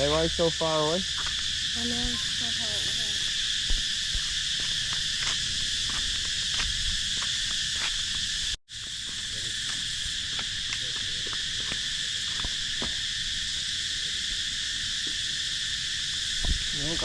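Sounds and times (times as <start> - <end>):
insects buzzing: 0.0 - 17.0.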